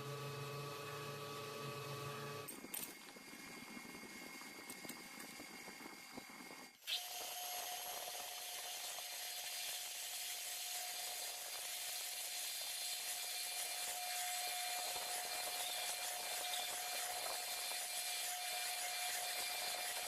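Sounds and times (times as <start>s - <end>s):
machine tool cutting metal: 9.0s - 20.0s.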